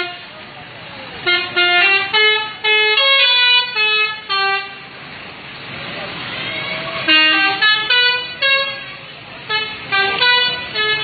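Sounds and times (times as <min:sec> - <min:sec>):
musical air horn tune: 0:01.2 - 0:04.8, 0:07.0 - 0:11.0.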